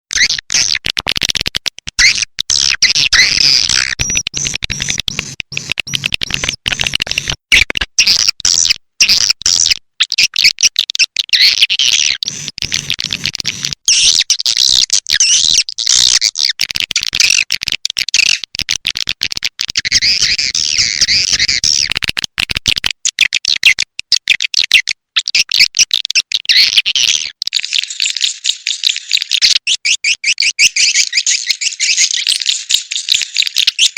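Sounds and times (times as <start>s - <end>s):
swiftlets twittering: 27.5s - 33.9s.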